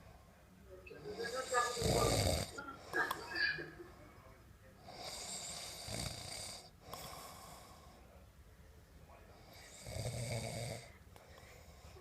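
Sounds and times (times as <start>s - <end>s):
quiet breath: 0.0s - 3.2s, 3.8s - 12.0s
person snoring: 1.2s - 2.6s, 9.6s - 10.9s.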